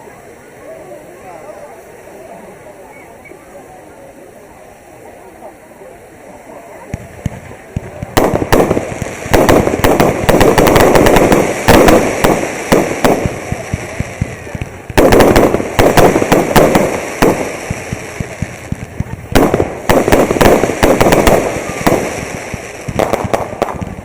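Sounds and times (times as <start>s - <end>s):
fireworks bangs and crackles: 6.7s - 24.0s.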